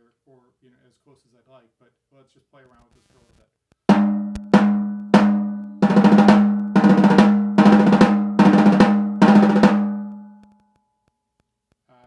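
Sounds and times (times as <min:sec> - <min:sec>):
snare drum hits ringing: 0:03.9 - 0:10.5.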